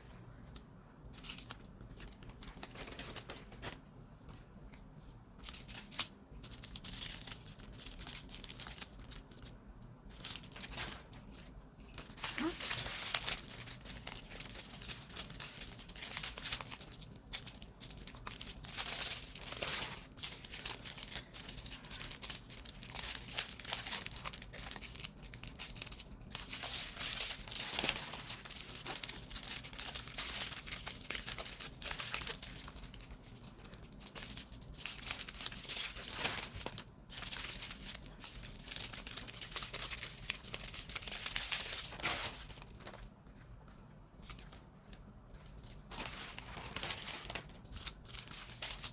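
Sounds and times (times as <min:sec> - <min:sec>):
plastic bags crinkling and rattling: 0:00.5 - 0:03.9, 0:05.4 - 0:43.1, 0:44.2 - 0:48.9.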